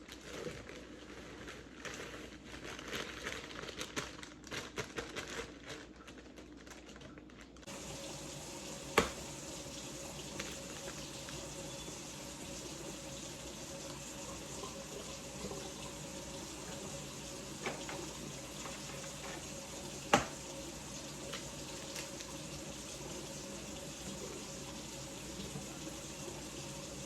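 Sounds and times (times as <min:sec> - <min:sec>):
running water: 0:07.7 - 0:27.0.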